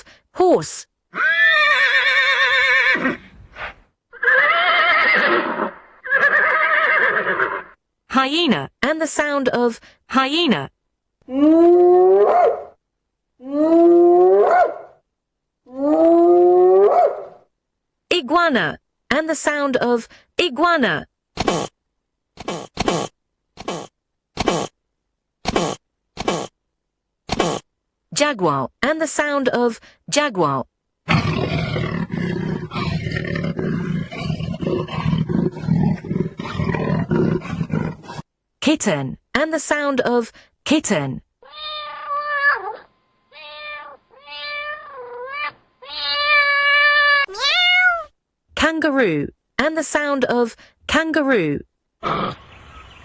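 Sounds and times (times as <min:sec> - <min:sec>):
jaguar roaring deep grunts: 0:31.1 - 0:38.3.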